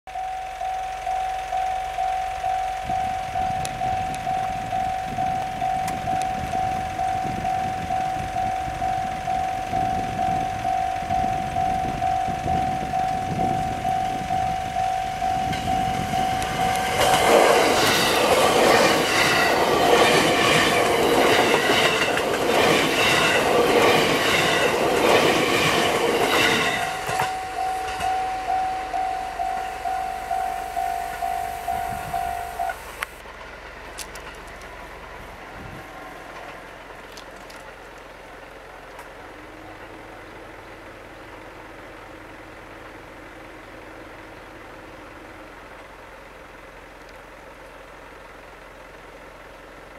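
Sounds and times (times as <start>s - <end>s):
level-crossing warning bell: 0.1s - 33.2s
train wheels clattering over rails: 15.4s - 29.9s.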